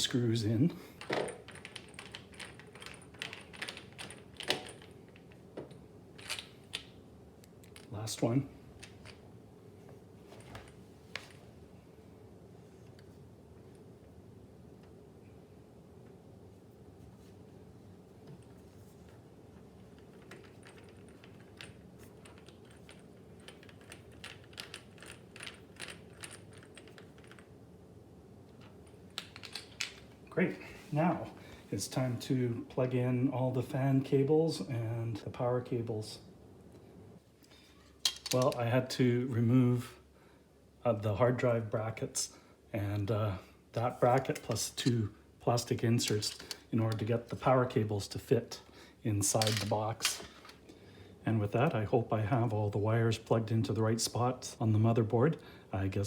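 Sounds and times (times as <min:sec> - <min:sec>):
clicks of small parts handled: 0:28.5 - 0:30.1, 0:37.9 - 0:38.6, 0:46.1 - 0:47.0, 0:49.3 - 0:50.6.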